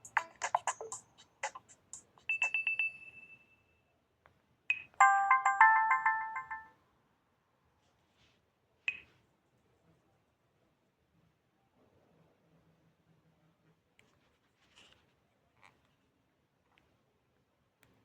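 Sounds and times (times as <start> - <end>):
multi-note phone chime: 4.7 - 6.8.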